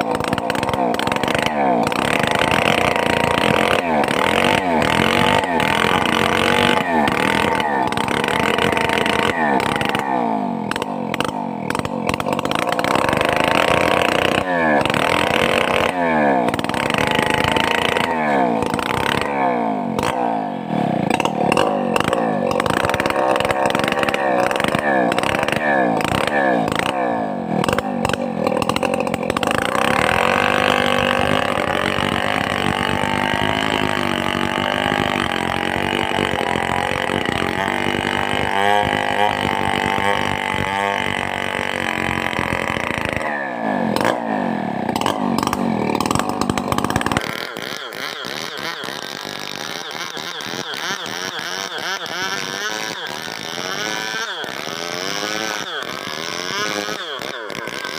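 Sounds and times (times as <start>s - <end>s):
chainsaw revving and cutting: 0.0s - 57.9s.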